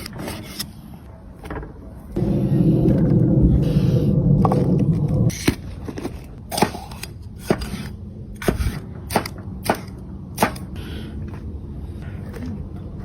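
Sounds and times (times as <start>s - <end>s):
low rumble: 2.1s - 6.4s.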